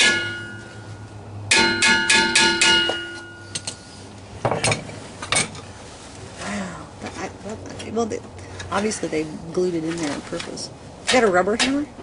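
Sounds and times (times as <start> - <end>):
hammer beating on metal: 0.0 - 0.8, 1.5 - 3.8.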